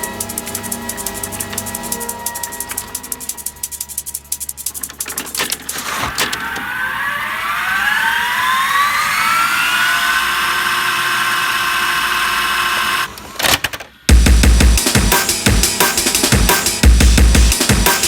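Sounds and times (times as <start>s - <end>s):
synth sweep rising: 6.6s - 11.0s
heavy bass and drums: 14.1s - 18.0s.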